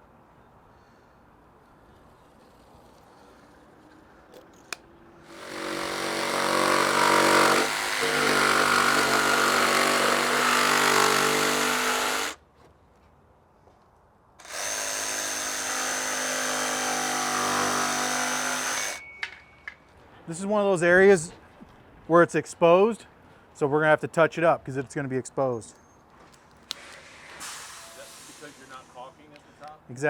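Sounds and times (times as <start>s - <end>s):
electric power tool whining: 5.3s - 12.4s, 14.4s - 19.0s.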